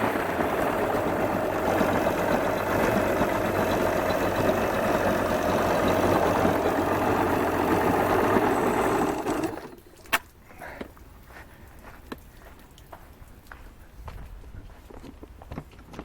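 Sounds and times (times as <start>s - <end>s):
outboard motor running: 0.0s - 9.9s.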